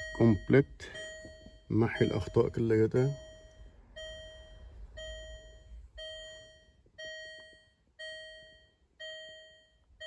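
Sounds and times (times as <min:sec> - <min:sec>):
car warning chime: 0:00.0 - 0:10.0.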